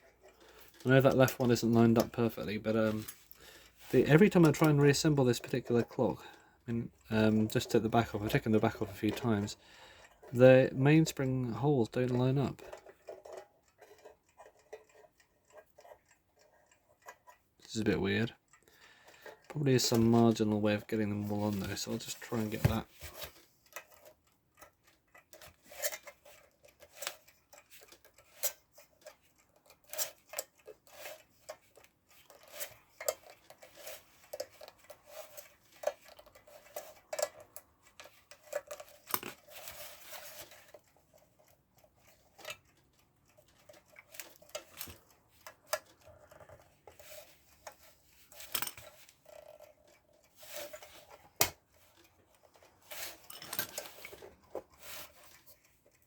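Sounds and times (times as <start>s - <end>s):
small metal parts clicking: 21.6s - 56.0s.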